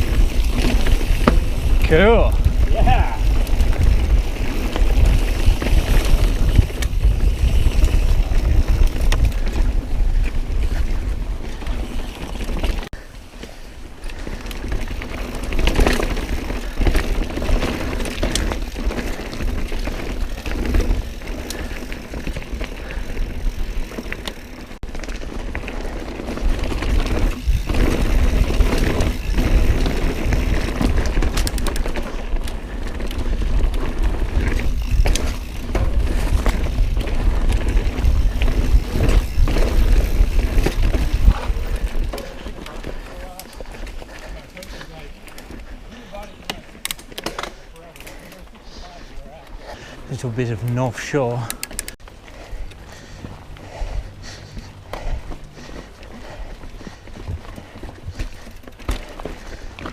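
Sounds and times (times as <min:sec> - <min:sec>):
wind rumbling on microphone: 0:00.0 - 0:13.1, 0:13.7 - 0:44.3
tyres rolling over dirt and rock: 0:00.0 - 0:53.5, 0:54.5 - 0:59.9
bike clicks and rattles: 0:00.0 - 0:59.9.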